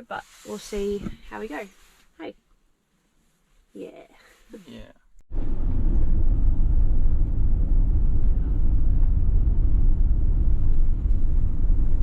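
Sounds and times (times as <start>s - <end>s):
loud buffeting low rumble: 5.3s - 12.0s.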